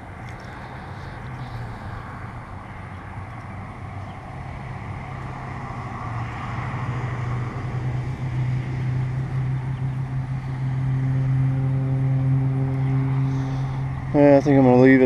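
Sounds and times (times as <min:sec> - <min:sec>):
low engine hum: 0:00.0 - 0:15.0.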